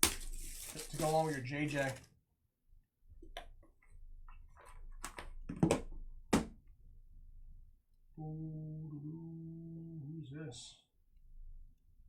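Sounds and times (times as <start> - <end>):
packaging rustling: 0.0 - 2.1.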